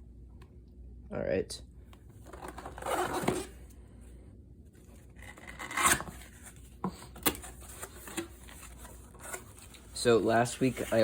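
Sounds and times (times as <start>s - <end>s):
rubbing and handling noises: 4.8s - 11.0s.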